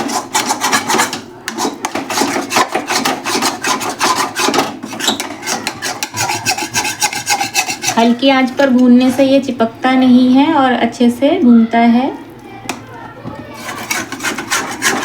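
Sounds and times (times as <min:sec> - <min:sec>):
spatula scraping a pan: 0:00.0 - 0:09.0, 0:13.3 - 0:15.0.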